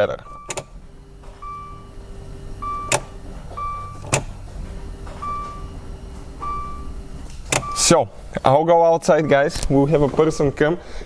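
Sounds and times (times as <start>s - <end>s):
fuel pump humming: 0.0s - 11.0s
dashboard chime beeping: 0.2s - 0.7s, 1.4s - 4.2s, 5.0s - 8.0s, 9.1s - 11.0s.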